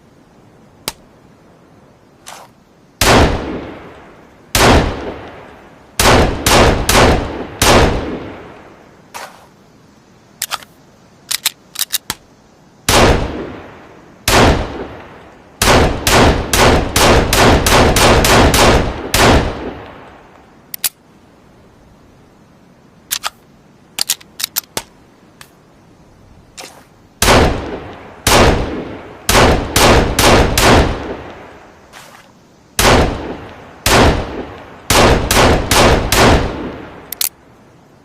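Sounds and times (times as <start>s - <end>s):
echoing pistol shots: 3.0s - 3.9s, 4.5s - 5.4s, 6.0s - 8.5s, 12.9s - 13.7s, 14.3s - 20.0s, 27.2s - 31.5s, 32.8s - 37.0s.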